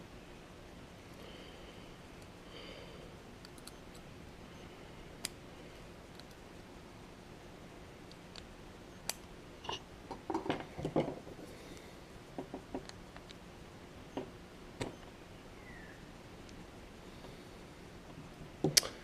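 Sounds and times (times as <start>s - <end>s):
small parts clicking and tapping: 3.4s - 4.1s, 6.1s - 6.4s, 12.4s - 13.4s.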